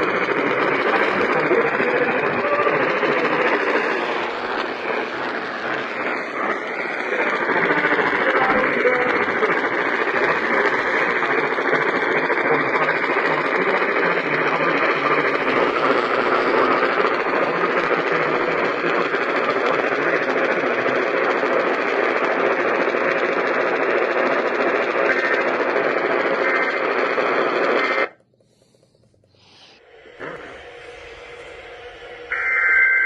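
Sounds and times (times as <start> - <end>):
radio static hiss: 0.0 - 33.0.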